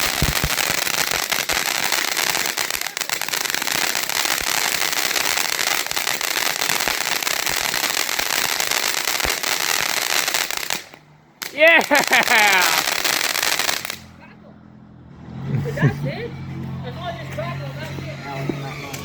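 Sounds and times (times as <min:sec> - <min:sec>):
firework crackling: 0:00.0 - 0:14.1
firework hiss: 0:00.0 - 0:14.1.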